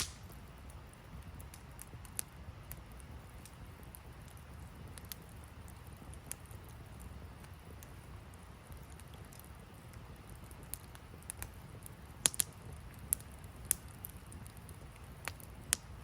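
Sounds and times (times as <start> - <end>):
fire pops: 0.0 - 16.0
wood fire crackling: 0.0 - 16.0.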